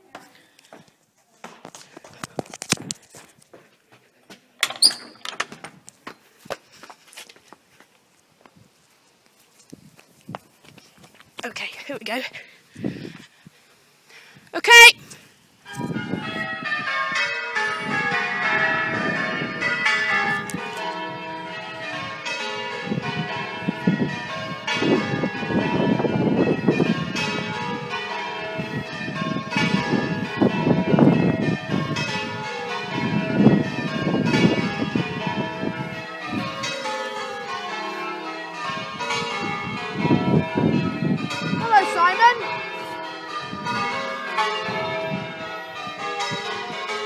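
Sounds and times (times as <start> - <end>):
church bells change ringing: 15.6 - 47.0.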